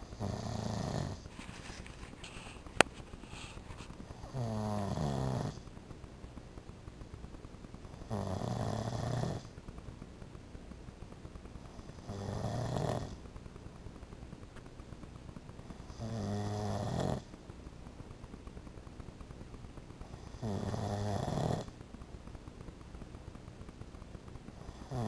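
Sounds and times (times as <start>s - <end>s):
man snoring: 0.1s - 1.2s, 4.2s - 5.6s, 8.0s - 9.5s, 11.9s - 13.2s, 15.9s - 17.3s, 20.2s - 21.7s, 24.6s - 25.0s.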